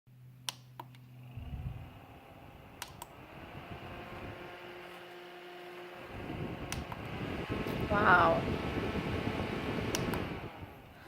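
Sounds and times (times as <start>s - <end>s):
fan motor whirring: 0.8s - 11.0s
fan button clicks: 2.7s - 3.2s, 6.4s - 8.1s, 9.8s - 10.4s.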